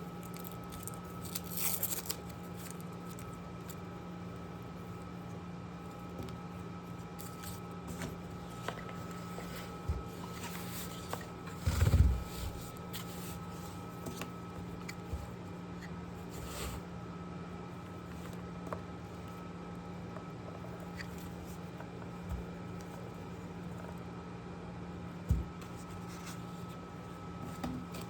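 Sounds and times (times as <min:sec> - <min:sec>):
steady electrical hum: 0:00.0 - 0:28.0.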